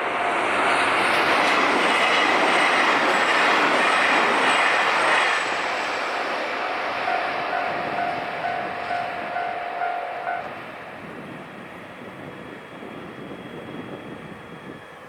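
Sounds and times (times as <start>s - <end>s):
diesel train running past: 0.0s - 15.0s
level crossing alarm bell: 6.6s - 10.5s.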